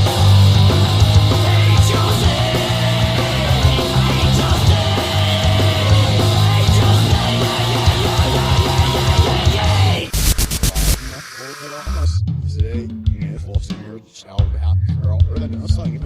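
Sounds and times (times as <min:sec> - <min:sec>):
rock music with electric guitar: 0:00.0 - 0:12.1.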